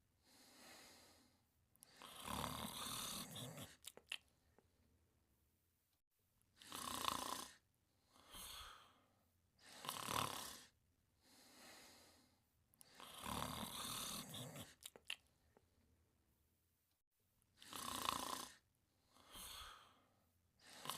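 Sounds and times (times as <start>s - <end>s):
soft breath out: 0.2s - 2.2s, 8.0s - 9.8s, 11.2s - 13.1s, 19.0s - 20.9s
cartoon snoring: 1.9s - 3.9s, 6.6s - 7.6s, 9.6s - 10.8s, 12.8s - 14.9s, 17.6s - 18.6s, 20.6s - 20.9s.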